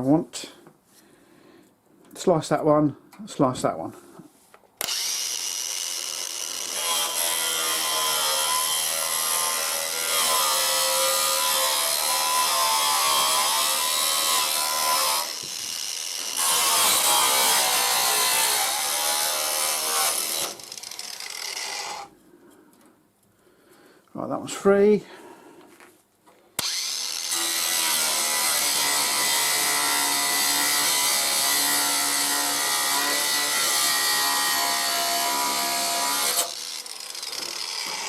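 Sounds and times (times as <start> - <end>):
power grinder cutting metal: 4.8 - 22.1, 26.6 - 38.0.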